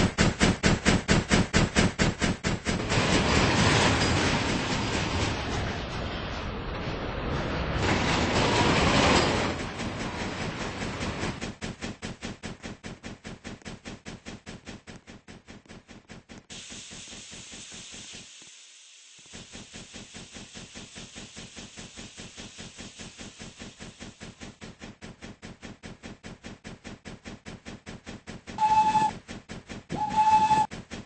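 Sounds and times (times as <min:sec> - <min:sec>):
steam locomotive chuffing: 0:00.0 - 0:06.1, 0:07.8 - 0:31.0
steam hissing: 0:08.3 - 0:31.0.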